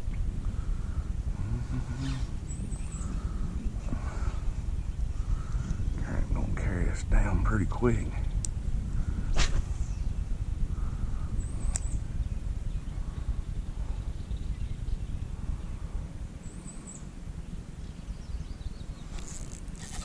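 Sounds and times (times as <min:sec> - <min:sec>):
faint birds chirping: 0:00.0 - 0:20.0
steady low rumble: 0:00.0 - 0:20.0.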